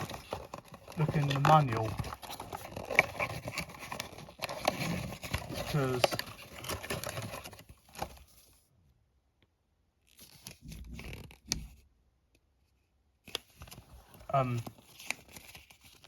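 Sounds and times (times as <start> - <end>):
paper packaging rustling: 0.0 - 8.6, 13.3 - 16.0.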